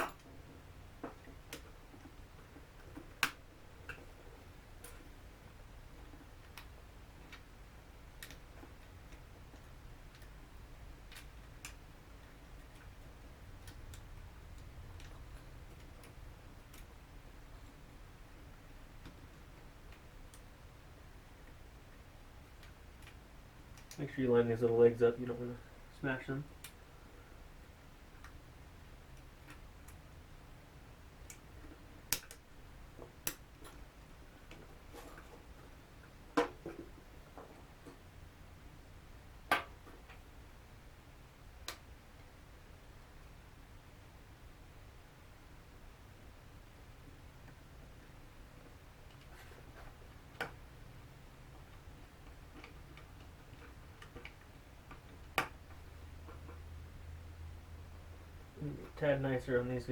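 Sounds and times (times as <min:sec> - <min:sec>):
light clicks and taps of parts: 0:05.9 - 0:17.0, 0:21.4 - 0:24.2, 0:28.1 - 0:28.4, 0:31.2 - 0:38.0, 0:51.4 - 0:56.7
sharp plastic clicks: 0:32.1 - 0:32.4.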